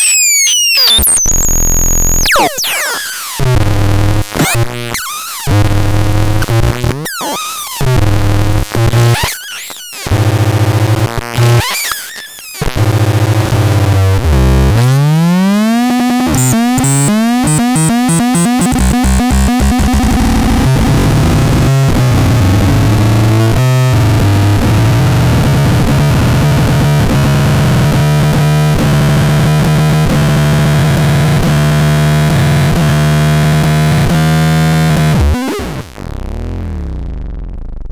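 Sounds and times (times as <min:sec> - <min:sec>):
harsh synth tones: 0:00.0 - 0:03.7, 0:04.3 - 0:07.9, 0:15.1 - 0:20.9.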